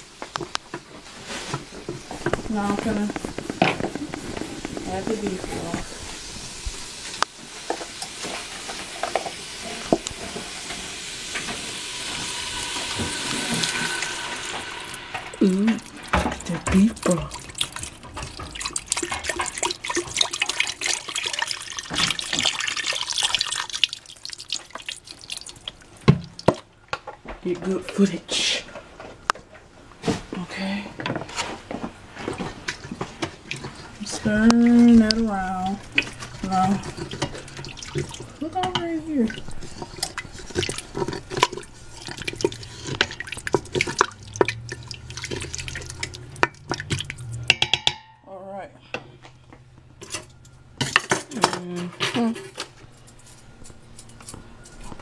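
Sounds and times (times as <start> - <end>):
liquid pouring into a pot: 1.8 - 26.7, 32.7 - 47.8
small pops and drips: 15.7 - 27.2, 32.7 - 47.9.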